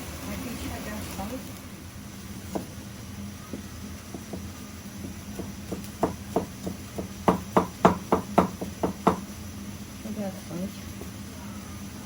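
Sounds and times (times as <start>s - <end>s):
steady low hum: 0.0s - 12.0s
knife chopping on cutting board: 3.5s - 9.2s.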